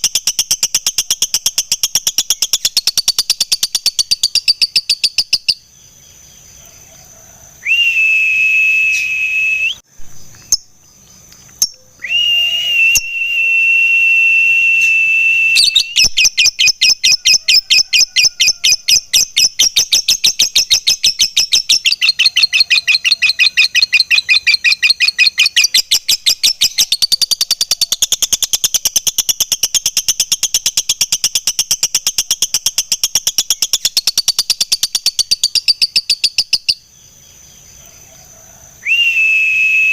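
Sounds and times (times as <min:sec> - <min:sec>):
lovebird chattering: 0:00.0 - 0:05.6, 0:15.6 - 0:36.8
high whistled notes: 0:07.6 - 0:09.8, 0:12.0 - 0:16.2, 0:38.8 - 0:39.9.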